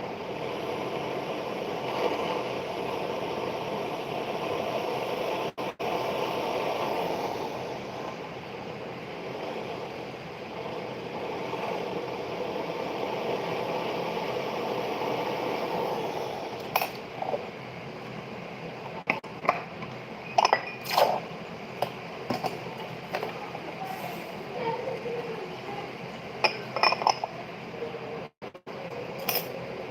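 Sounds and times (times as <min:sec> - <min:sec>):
metal tools clinking on bench: 0:20.3 - 0:20.9, 0:26.4 - 0:27.3.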